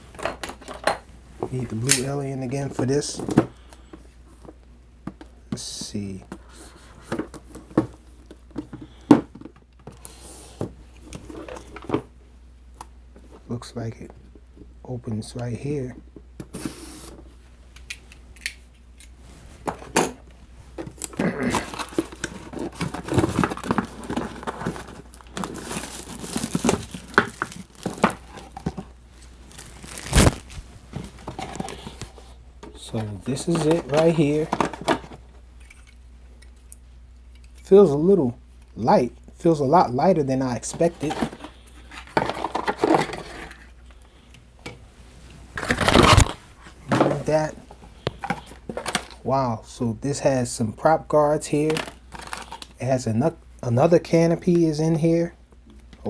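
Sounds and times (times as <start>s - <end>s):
box rustling: 20.8s - 35.1s, 40.8s - 43.6s, 45.6s - 49.2s
packaging crinkling and tearing: 21.0s - 32.1s, 45.6s - 46.4s, 51.7s - 52.7s.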